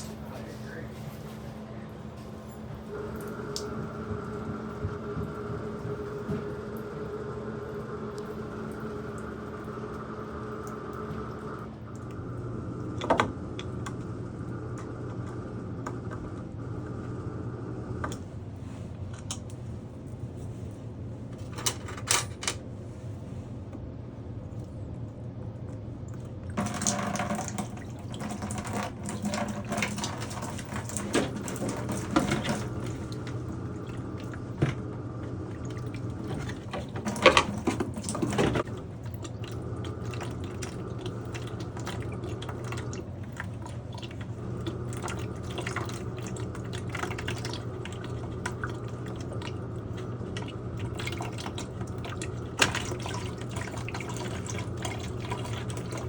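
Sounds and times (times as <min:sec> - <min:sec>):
steady low hum: 0:00.0 - 0:56.0
water trickling and dripping: 0:26.1 - 0:56.0.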